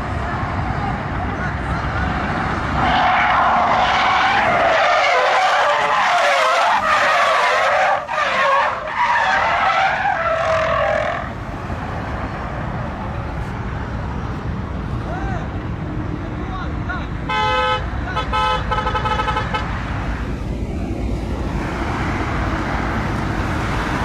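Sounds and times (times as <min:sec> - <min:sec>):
car engine: 0:00.0 - 0:24.0
car tyres squealing: 0:01.9 - 0:11.4.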